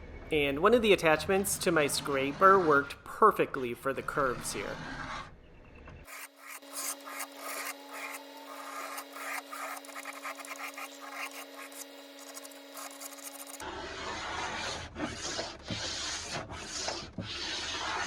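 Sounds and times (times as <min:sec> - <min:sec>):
paint scraper scraping wood: 0:01.2 - 0:03.0, 0:06.0 - 0:18.0.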